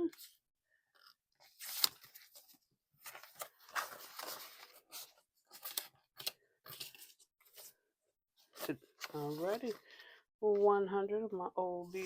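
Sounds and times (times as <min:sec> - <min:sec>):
paper rustling and crinkling: 0:01.0 - 0:07.8, 0:08.5 - 0:09.9.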